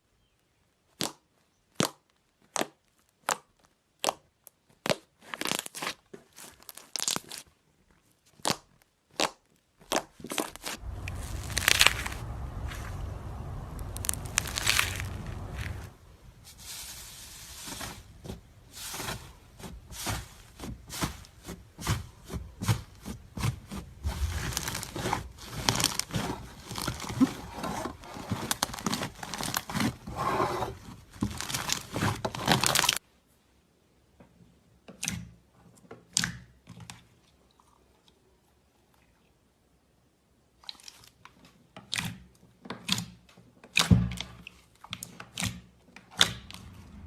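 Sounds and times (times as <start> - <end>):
slime crackling and popping: 6.5 - 7.4, 8.4 - 16.0, 24.0 - 30.0, 31.2 - 33.0.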